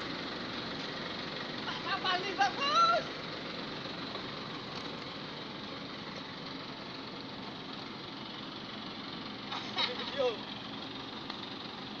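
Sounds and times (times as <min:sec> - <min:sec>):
vehicle engine idling: 0:00.0 - 0:12.0.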